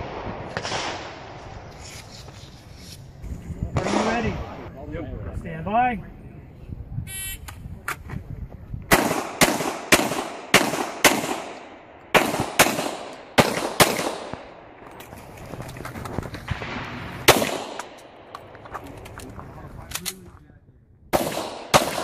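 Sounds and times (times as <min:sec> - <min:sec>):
pistol shots ringing: 0:08.9 - 0:14.6, 0:16.6 - 0:18.4, 0:21.1 - 0:22.0.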